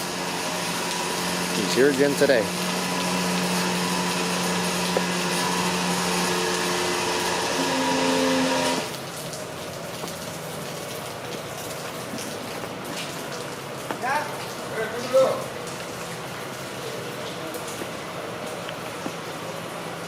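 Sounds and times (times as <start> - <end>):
truck motor whine: 0.0 - 9.0
steady rain: 0.0 - 20.0.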